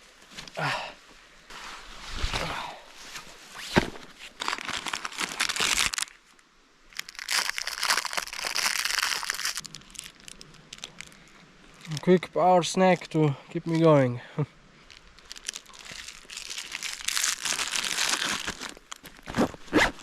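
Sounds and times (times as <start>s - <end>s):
plastic wrapper crinkling and tearing: 4.3s - 6.2s, 6.9s - 12.2s, 14.9s - 19.4s.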